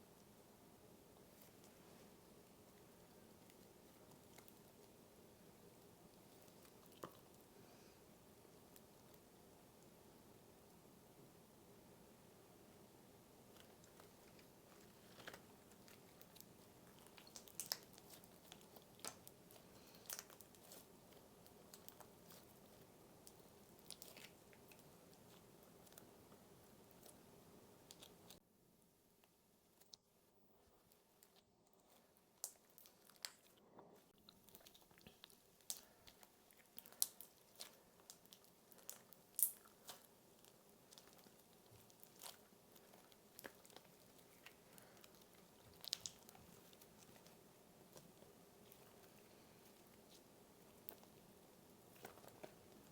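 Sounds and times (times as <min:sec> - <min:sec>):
slime crackling and crunching: 0:13.5 - 0:28.4, 0:34.1 - 0:52.9.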